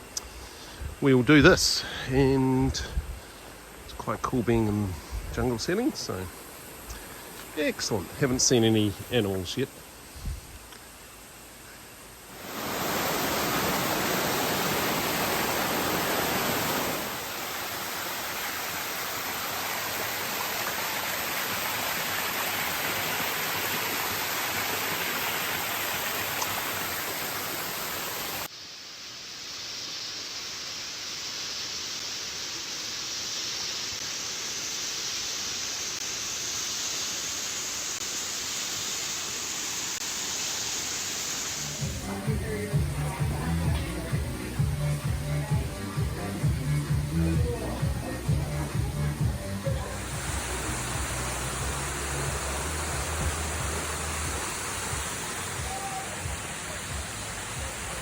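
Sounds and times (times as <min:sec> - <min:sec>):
rushing water: 0:12.0 - 0:28.5, 0:35.3 - 0:58.0.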